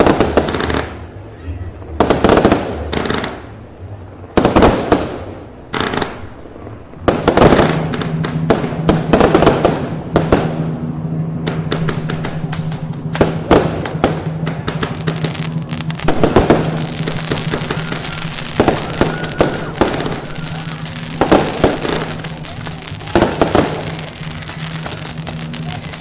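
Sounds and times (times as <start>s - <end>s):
firecrackers crackling: 0.0s - 26.0s
firecracker bangs: 7.0s - 26.0s.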